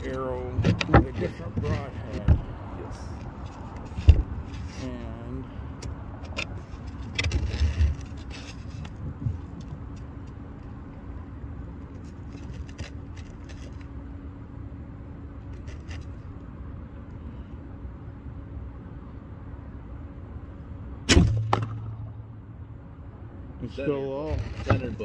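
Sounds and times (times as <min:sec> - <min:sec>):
light handling clicks and knocks: 0:00.0 - 0:04.8
low motor rumble: 0:00.0 - 0:25.0.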